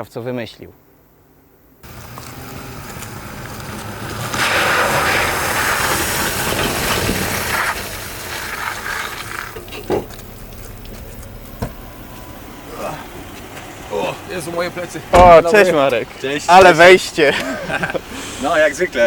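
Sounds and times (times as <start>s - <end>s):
vehicle splashing through mud: 1.8s - 19.0s
sharp knocks: 15.1s - 15.5s.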